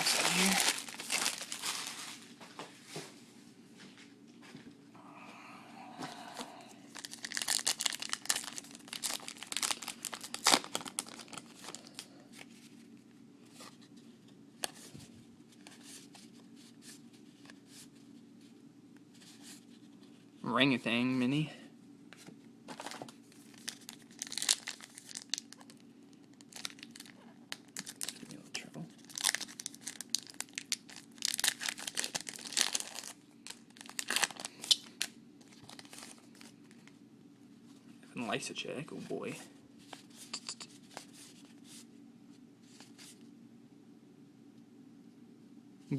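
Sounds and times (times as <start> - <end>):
wrapper tearing and crinkling: 0.0 - 2.3, 6.9 - 12.1, 22.7 - 28.3, 28.9 - 36.5.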